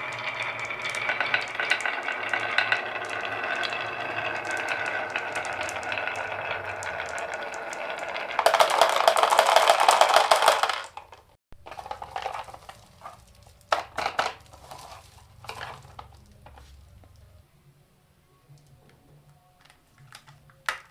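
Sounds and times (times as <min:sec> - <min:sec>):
marbles rolling down a marble run: 0:00.0 - 0:16.7
balls knocking together: 0:00.0 - 0:17.2.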